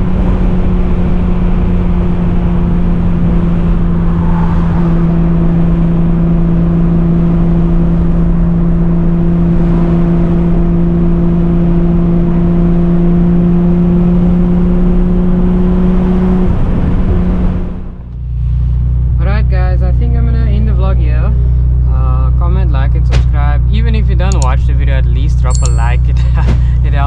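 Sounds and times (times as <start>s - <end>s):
road noise: 0.0s - 9.2s.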